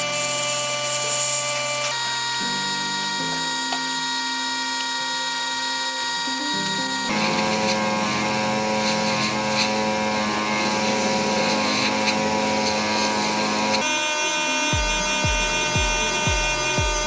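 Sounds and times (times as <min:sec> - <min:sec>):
small motor whirring: 0:00.0 - 0:17.0.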